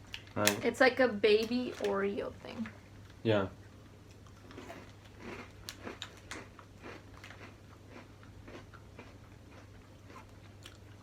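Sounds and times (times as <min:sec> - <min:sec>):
crackers crunching while chewing: 0:04.0 - 0:11.0.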